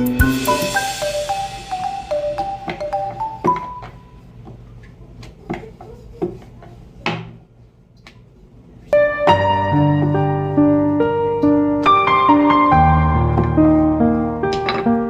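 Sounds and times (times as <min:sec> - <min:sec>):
background piano music: 0:00.0 - 0:04.2, 0:08.9 - 0:15.0.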